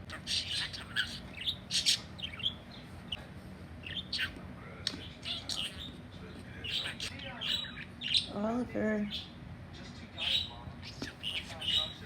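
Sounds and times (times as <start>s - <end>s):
budgerigars chirping: 0.0s - 3.2s, 3.8s - 6.0s, 6.6s - 8.4s, 9.1s - 9.4s, 10.2s - 12.0s
faint low hum: 0.0s - 12.0s.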